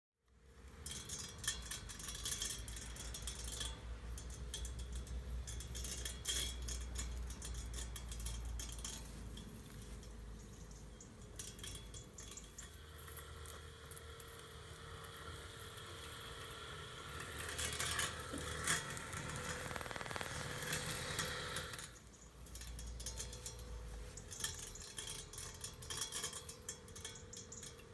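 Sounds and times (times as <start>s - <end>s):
metallic rattle: 0.6s - 27.9s
robotic lawn mower running: 13.4s - 22.0s.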